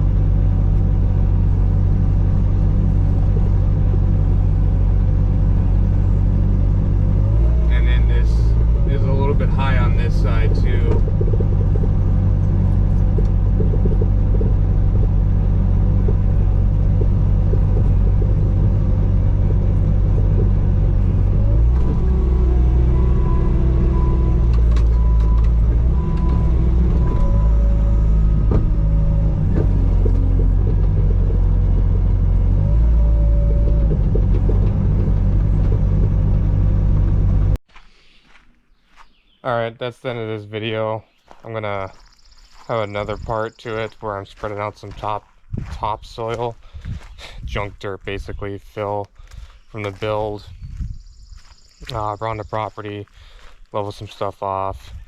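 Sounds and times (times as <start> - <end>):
diesel engine running loudly: 0.0 - 37.6.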